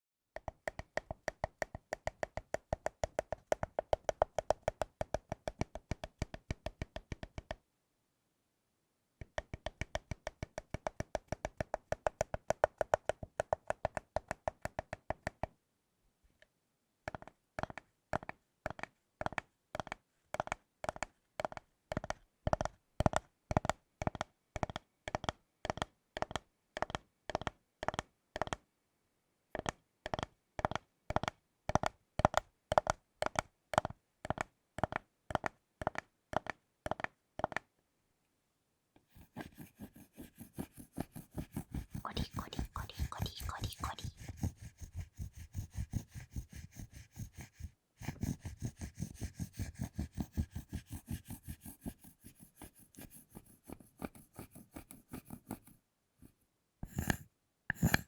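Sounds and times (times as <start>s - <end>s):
tapping on chocolate: 56.8s - 58.0s.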